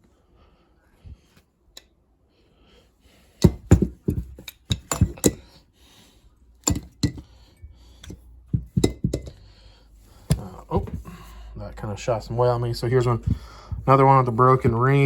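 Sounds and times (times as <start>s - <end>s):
metal engine parts knocking: 3.4s - 5.5s, 6.6s - 7.3s, 8.0s - 9.4s.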